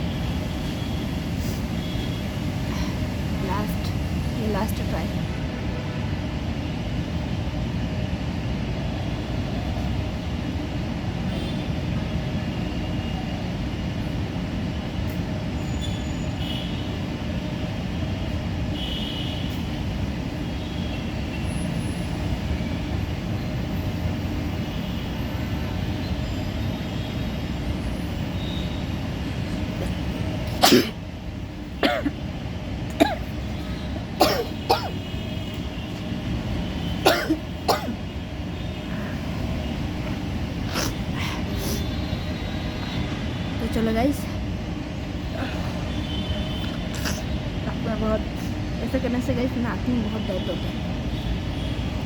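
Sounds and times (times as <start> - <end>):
coughs and sniffs: 29.8 - 31.0, 31.8 - 32.2, 32.9 - 33.3, 34.2 - 35.0, 37.0 - 38.0, 40.6 - 41.9, 46.6 - 47.4
woman sneezing: 29.8 - 31.0, 37.1 - 38.0.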